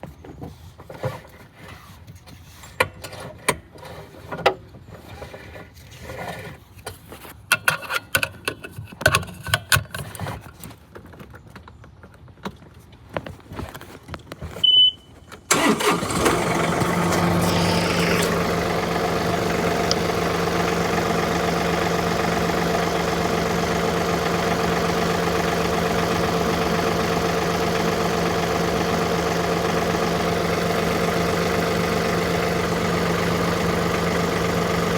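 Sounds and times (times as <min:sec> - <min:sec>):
short beep: 0:14.6 - 0:15.1
tractor engine starting and idling: 0:15.4 - 0:34.9.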